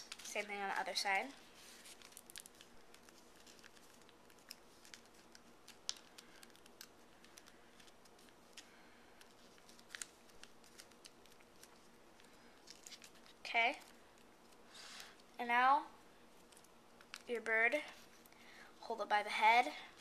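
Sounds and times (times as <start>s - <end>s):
paper crackling as folded: 0.0s - 15.3s, 16.3s - 18.3s
small paper clicks: 1.8s - 15.1s.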